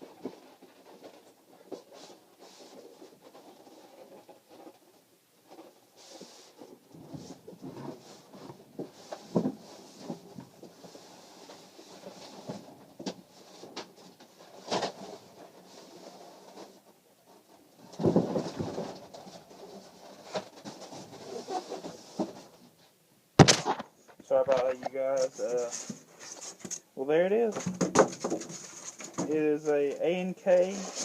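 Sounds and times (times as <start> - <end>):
handling knocks and thumps: 17.8 - 22.5, 23.4 - 26.8, 27.4 - 29.8
cardboard box rustling and scraping: 23.6 - 26.8, 27.4 - 31.0.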